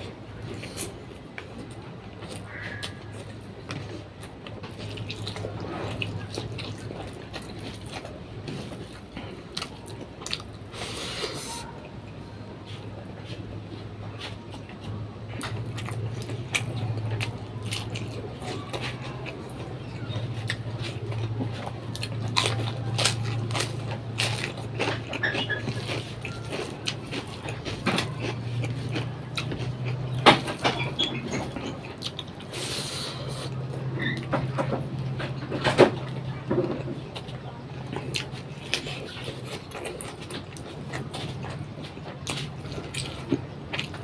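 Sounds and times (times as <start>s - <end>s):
chewing and mouth noises: 0.0s - 44.0s.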